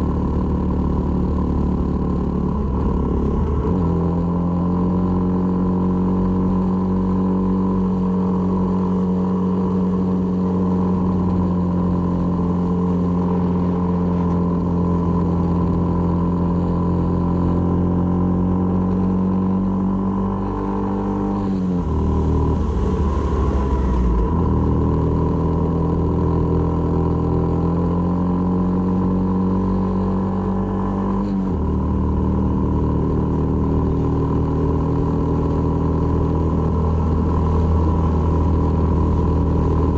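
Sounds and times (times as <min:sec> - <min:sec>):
motorcycle engine running: 0:00.0 - 0:39.9
rushing noise: 0:21.7 - 0:25.1.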